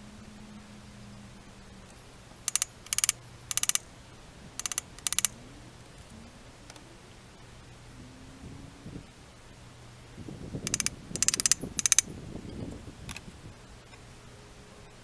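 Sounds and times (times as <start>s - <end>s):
ratchet wrench clicking: 2.4s - 3.8s, 4.6s - 5.4s, 10.6s - 12.0s.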